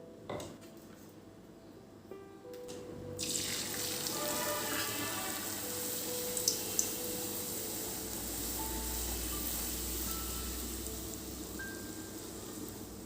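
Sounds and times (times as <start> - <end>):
soft background music: 0.0 - 13.0
water running from a tap: 3.2 - 5.7.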